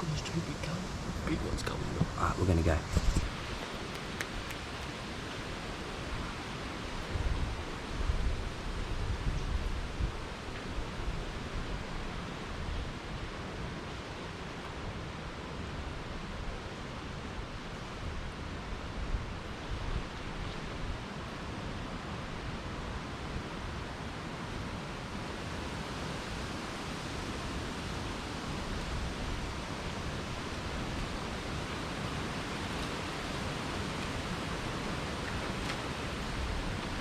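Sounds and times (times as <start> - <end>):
wind buffeting microphone: 0.0 - 12.1.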